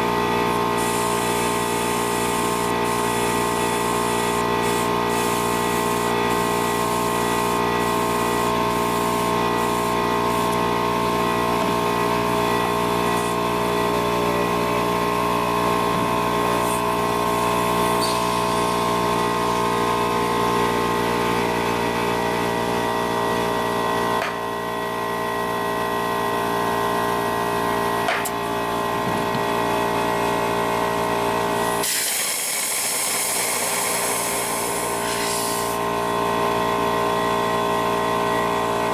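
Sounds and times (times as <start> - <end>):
small motor whining: 0.0 - 19.7, 31.4 - 36.1.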